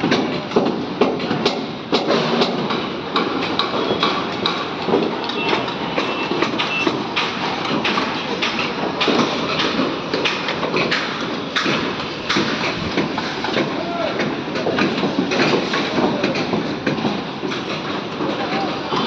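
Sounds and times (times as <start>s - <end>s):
metal knocks and clanks: 0.0s - 19.0s
steady construction din: 0.0s - 19.0s.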